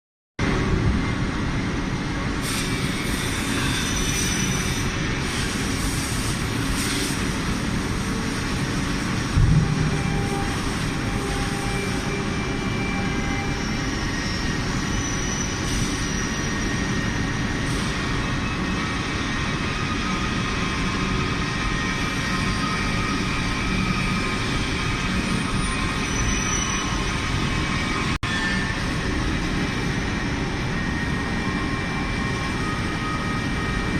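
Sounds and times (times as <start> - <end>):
bending machine humming: 7.3 - 14.2
heavy thump: 9.4 - 10.3.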